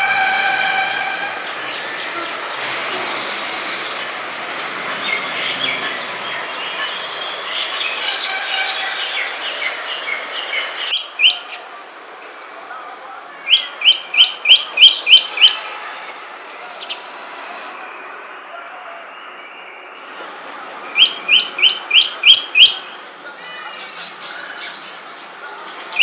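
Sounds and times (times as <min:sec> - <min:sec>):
background hiss: 0:00.0 - 0:10.9
quick repeated falling bird notes: 0:00.0 - 0:10.9
loud bird calls: 0:00.0 - 0:11.0
songbirds chirping: 0:00.0 - 0:11.4.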